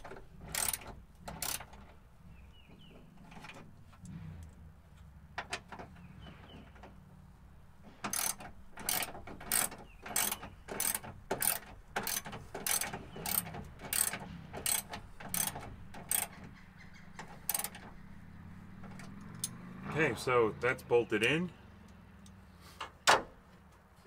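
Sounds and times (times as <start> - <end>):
ratchet wrench clicking: 0.0 - 1.8, 8.0 - 16.4, 17.2 - 17.9.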